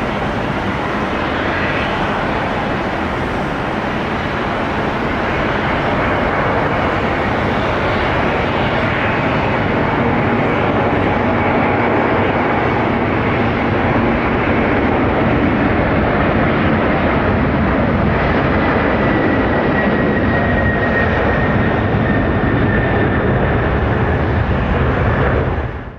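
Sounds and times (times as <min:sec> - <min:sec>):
faint high whine: 0:00.0 - 0:15.4
jet engines at takeoff power: 0:00.0 - 0:25.9.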